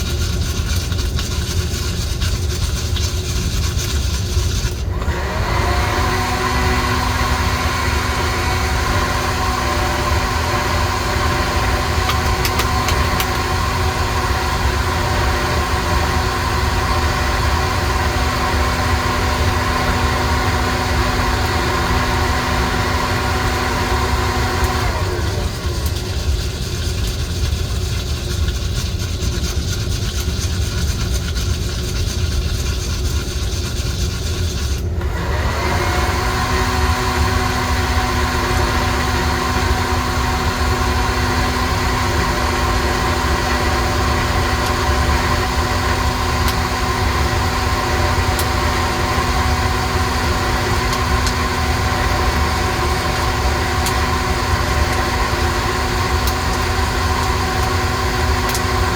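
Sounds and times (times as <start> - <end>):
coffee roaster drum rumbling: 4.6 - 27.8, 35.8 - 58.9.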